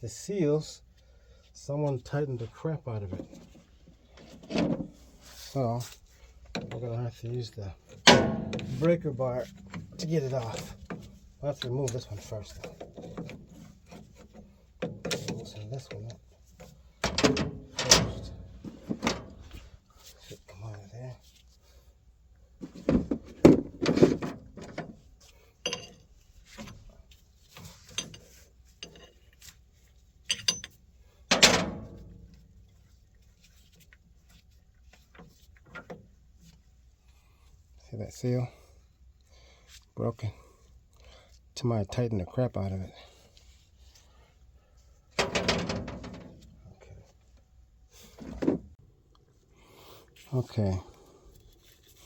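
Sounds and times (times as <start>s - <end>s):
metal clunk with a scrape: 3.1s - 6.0s, 7.9s - 11.3s, 16.6s - 19.8s, 22.6s - 25.0s, 27.5s - 29.3s, 30.3s - 32.4s, 45.2s - 46.5s, 48.0s - 48.8s
metal clinks and knocks of wrench: 17.0s - 18.5s, 25.6s - 26.8s, 27.6s - 29.3s, 30.2s - 32.4s
metal tools rattling clatter: 17.0s - 19.6s, 25.6s - 26.9s, 27.6s - 29.3s, 30.2s - 32.4s.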